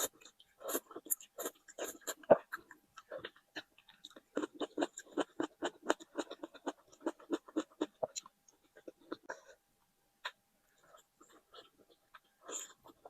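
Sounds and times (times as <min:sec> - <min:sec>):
person chewing: 0:00.0 - 0:09.6, 0:10.2 - 0:13.0.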